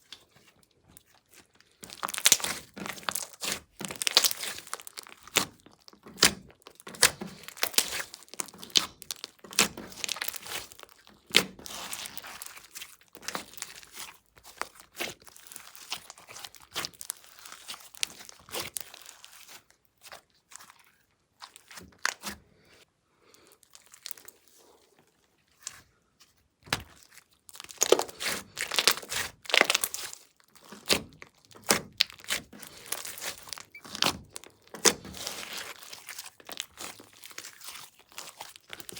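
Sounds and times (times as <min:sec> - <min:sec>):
slime crackling and popping: 0:01.7 - 0:19.7, 0:23.6 - 0:24.3, 0:26.7 - 0:38.9.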